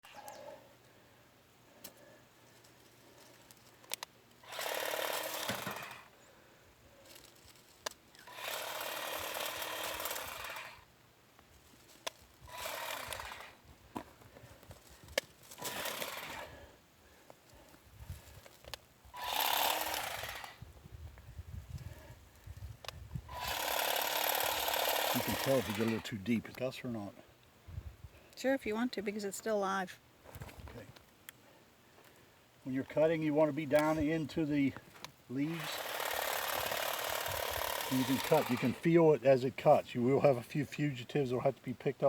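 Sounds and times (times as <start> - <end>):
hedge trimmer cutting stems: 3.1 - 6.1, 7.0 - 10.9, 11.8 - 14.0, 14.8 - 16.7, 17.6 - 20.7, 21.8 - 26.6, 32.9 - 40.4.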